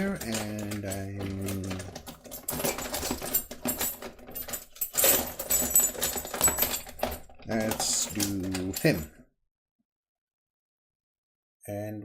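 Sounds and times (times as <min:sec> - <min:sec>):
metal padlocks clattering: 0:00.0 - 0:09.2.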